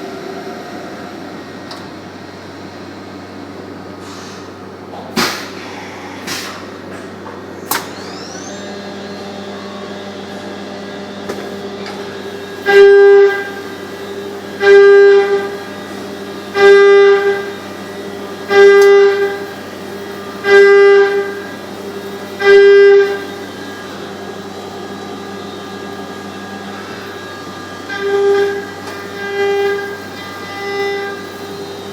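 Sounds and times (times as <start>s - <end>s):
steady machine hum: 0.0s - 31.9s
electronic warning buzzer beeps: 12.6s - 13.6s, 14.6s - 15.7s, 16.5s - 17.8s, 18.5s - 19.5s, 20.2s - 21.6s, 22.3s - 23.3s, 27.1s - 31.6s.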